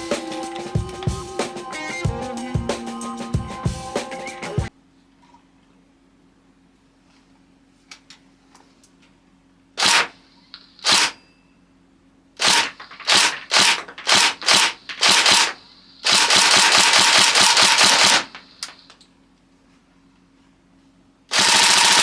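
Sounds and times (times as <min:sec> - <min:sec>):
airsoft gun firing: 0:09.8 - 0:10.2, 0:10.8 - 0:11.2, 0:12.4 - 0:18.4, 0:21.3 - 0:22.0.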